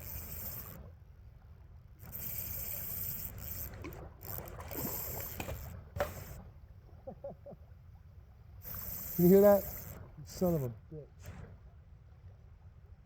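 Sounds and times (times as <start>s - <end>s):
fishing reel drag buzzing: 0.0s - 1.0s, 2.0s - 6.5s, 8.6s - 11.4s.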